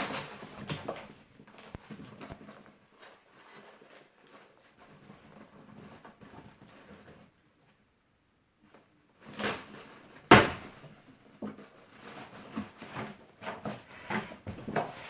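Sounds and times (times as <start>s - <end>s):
cardboard box scraping and rustling: 11.6s - 15.0s.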